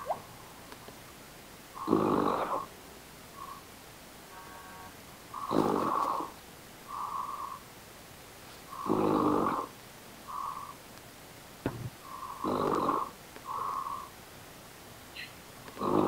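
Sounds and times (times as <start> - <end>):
soft breaths: 1.7 - 3.8, 5.2 - 11.0, 11.9 - 14.2
person snoring loudly: 1.8 - 2.7, 5.4 - 7.5, 8.7 - 9.7, 12.0 - 14.0, 15.8 - 16.0.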